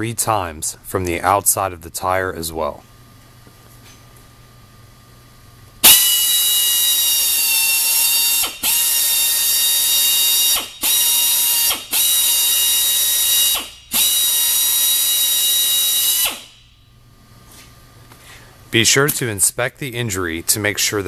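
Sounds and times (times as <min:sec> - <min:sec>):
drill whining: 0:05.8 - 0:16.6.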